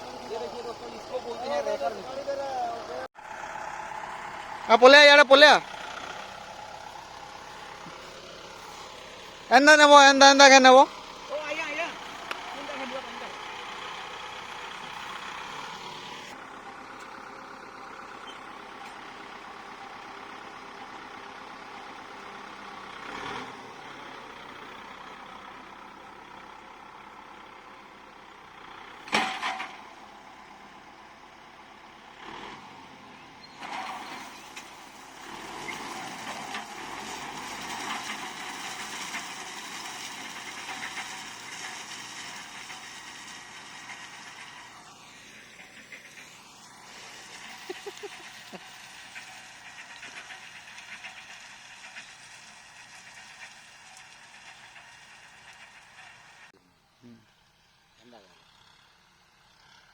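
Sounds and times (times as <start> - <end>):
tractor engine running: 0.0 - 59.9
hay rake rattling: 4.7 - 15.1, 33.6 - 56.4.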